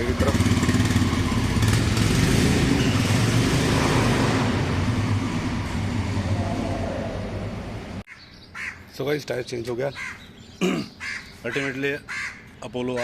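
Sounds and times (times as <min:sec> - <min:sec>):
motorcycle engine running: 0:00.0 - 0:06.3.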